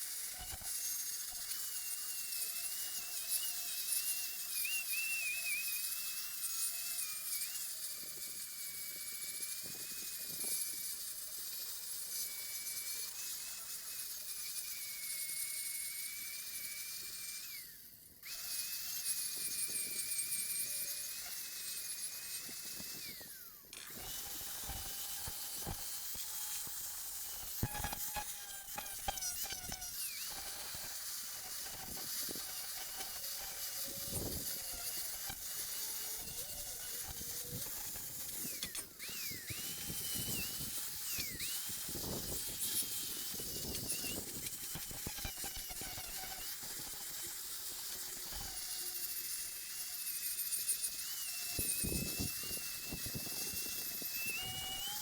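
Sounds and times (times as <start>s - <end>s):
angle grinder sanding steel: 18.8s - 55.0s.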